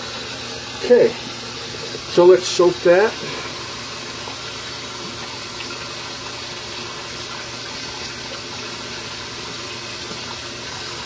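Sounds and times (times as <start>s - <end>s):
tap water running into sink: 0.0s - 11.0s.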